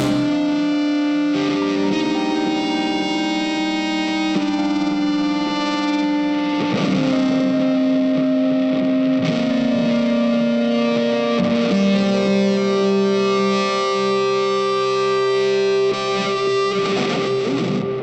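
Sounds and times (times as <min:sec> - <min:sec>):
distorted guitar music: 0:00.0 - 0:00.8.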